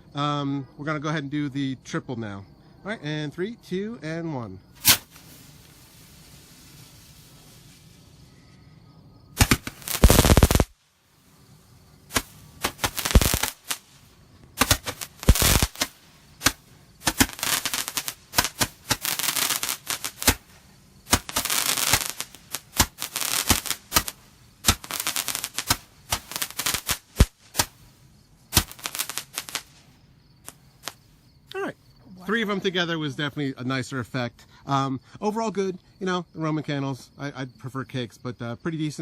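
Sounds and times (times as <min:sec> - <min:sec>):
fireworks crackling: 0:04.7 - 0:08.7, 0:09.3 - 0:31.6
roman candle launch pops: 0:04.8 - 0:07.8, 0:09.4 - 0:10.8, 0:12.1 - 0:27.8, 0:28.5 - 0:29.8.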